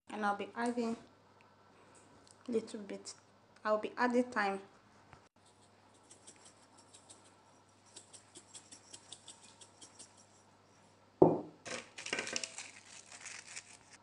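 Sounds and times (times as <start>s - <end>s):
loud knock: 11.2s - 11.6s.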